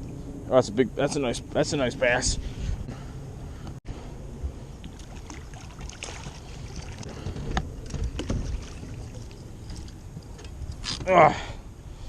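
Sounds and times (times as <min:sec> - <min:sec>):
water splashing: 0:04.8 - 0:10.1.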